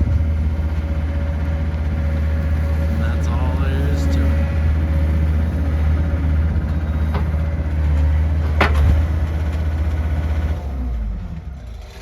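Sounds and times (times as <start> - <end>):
heavy farm machine engine running: 0.0 - 12.0.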